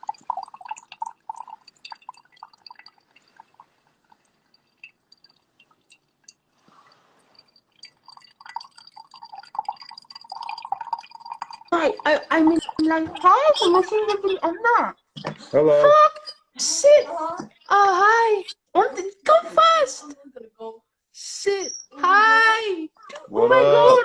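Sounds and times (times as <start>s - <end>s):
coffee dripping into liquid: 0.0s - 15.2s.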